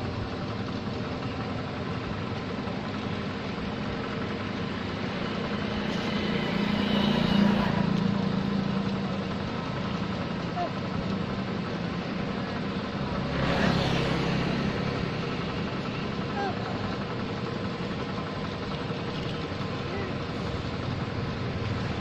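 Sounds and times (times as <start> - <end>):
vehicle engine passing by: 5.2 - 9.5, 12.5 - 16.7.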